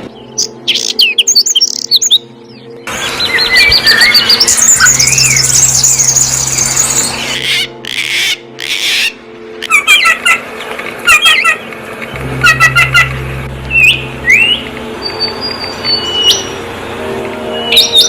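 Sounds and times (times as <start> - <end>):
songbirds chirping: 0.0 - 18.0
low hum: 11.6 - 17.8.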